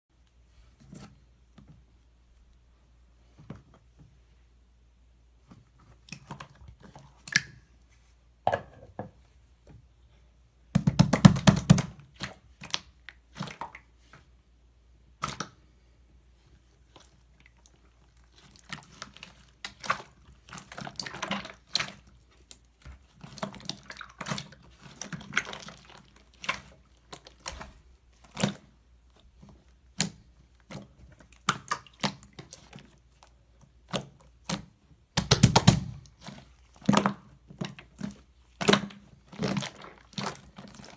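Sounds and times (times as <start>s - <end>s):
slime squished by hand: 16.7s - 40.9s.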